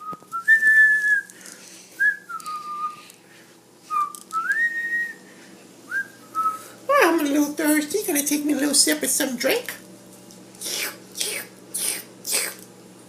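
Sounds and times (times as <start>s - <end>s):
person whistling a tune: 0.0s - 1.3s, 2.0s - 3.0s, 3.9s - 5.2s, 5.9s - 6.6s.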